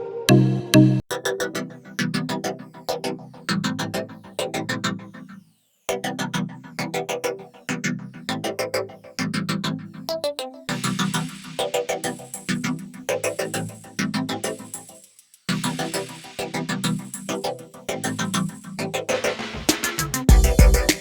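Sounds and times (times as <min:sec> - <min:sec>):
electronic synthesizer music: 0:15.6 - 0:21.0.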